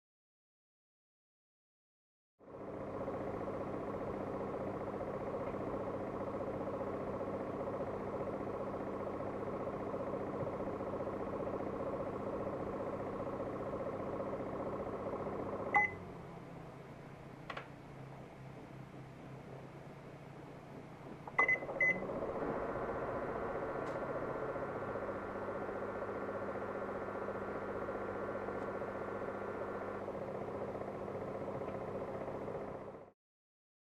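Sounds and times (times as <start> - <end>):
air purifier humming and buzzing: 2.5 - 33.1
short electronic beep: 15.7 - 16.0.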